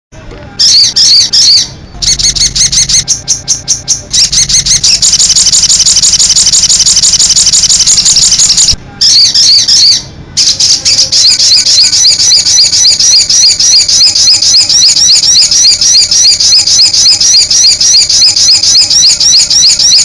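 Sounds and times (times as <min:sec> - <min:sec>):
songbird chirping and trilling: 0:00.5 - 0:20.0.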